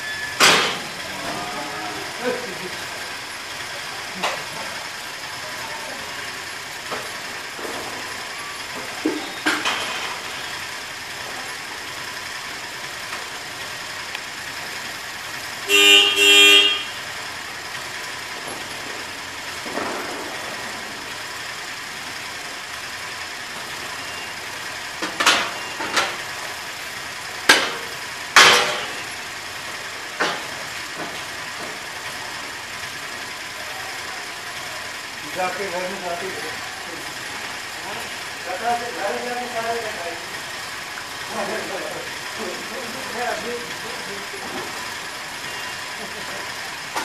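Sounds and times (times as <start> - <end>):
steady background noise: 0.0 - 47.0
vehicle horn honks: 15.6 - 17.2.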